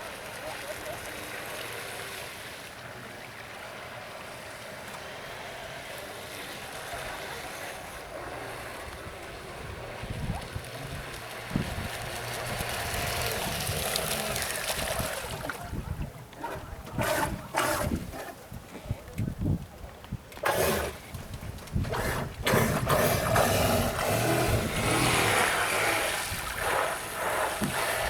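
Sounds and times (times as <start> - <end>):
faint wavering motor whine: 0.0 - 18.4
wind and water noise: 0.0 - 28.0
low buffeting on microphone: 8.3 - 28.0.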